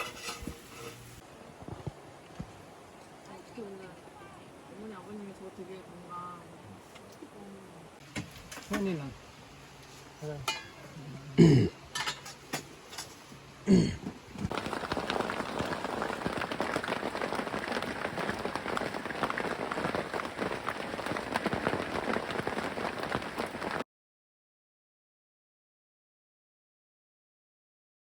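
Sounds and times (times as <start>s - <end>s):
rain pattering: 14.4s - 23.8s.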